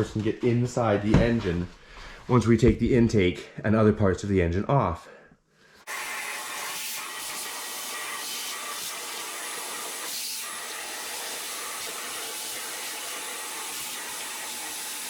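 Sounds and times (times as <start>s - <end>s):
shop vacuum running: 5.9s - 15.0s.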